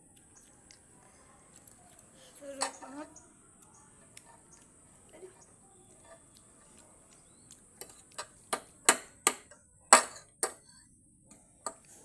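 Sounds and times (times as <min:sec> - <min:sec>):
eating clicks and taps: 0:03.6 - 0:09.1.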